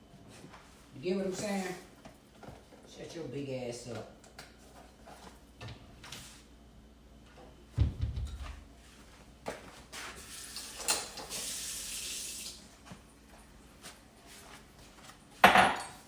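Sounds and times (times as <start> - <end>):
kitchen knocks and clicks: 15.4 - 16.0.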